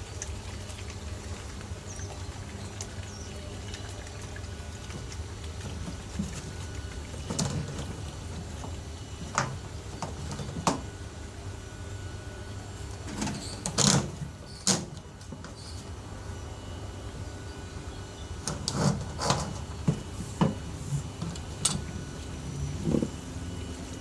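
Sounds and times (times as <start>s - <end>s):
water splashing and thumps in drum: 0.0s - 10.9s, 18.5s - 22.1s
washing machine motor hum: 0.0s - 24.0s.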